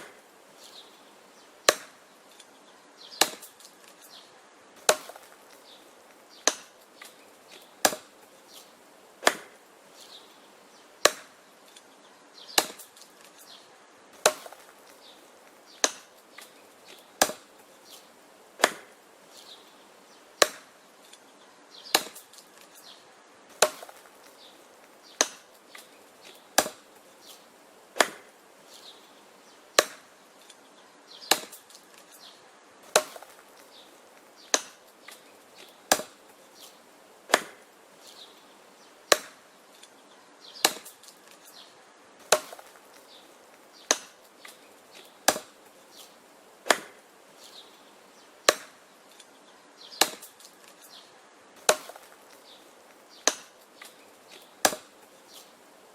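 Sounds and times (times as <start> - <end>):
axe chopping wood: 0.0 - 0.2, 1.6 - 2.1, 3.1 - 4.1, 4.8 - 9.6, 11.0 - 11.8, 12.5 - 13.6, 14.2 - 19.0, 20.4 - 21.2, 21.9 - 28.4, 29.7 - 30.5, 31.2 - 37.7, 39.1 - 39.8, 40.6 - 41.6, 42.2 - 47.0, 48.4 - 48.9, 49.9 - 50.8, 51.6 - 52.6, 53.2 - 55.4.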